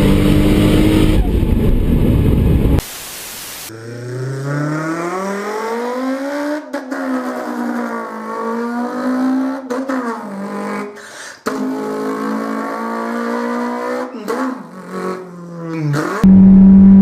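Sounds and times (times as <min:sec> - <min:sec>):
person imitating car engine: 0:03.7 - 0:08.7, 0:09.3 - 0:17.0.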